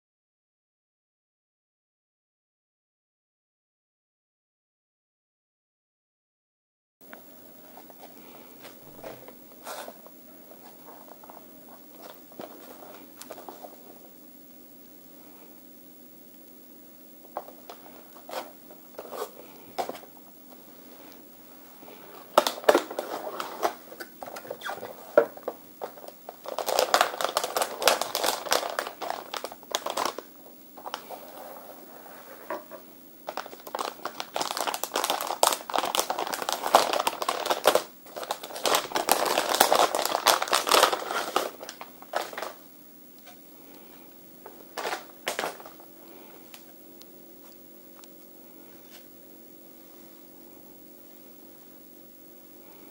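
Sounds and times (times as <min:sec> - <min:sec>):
plastic wrap and cardboard crinkling: 0:07.6 - 0:14.1, 0:17.2 - 0:43.4, 0:44.4 - 0:46.8.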